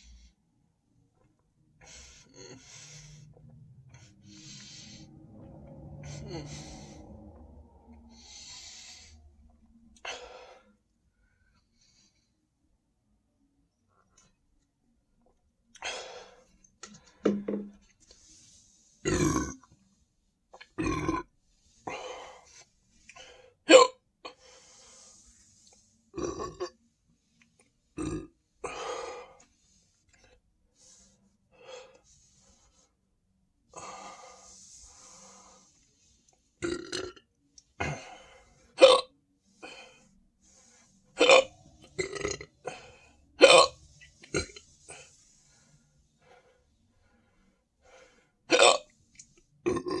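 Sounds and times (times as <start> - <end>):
person burping and hiccuping: 19.1 - 19.6, 20.8 - 21.2, 26.2 - 26.7, 38.8 - 39.1, 41.2 - 42.5, 43.4 - 43.8, 48.5 - 48.9, 49.6 - 50.0.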